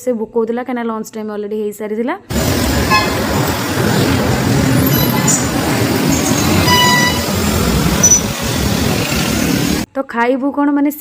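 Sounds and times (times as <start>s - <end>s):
vehicle horn: 2.3s - 8.2s
busy road traffic: 2.3s - 9.9s.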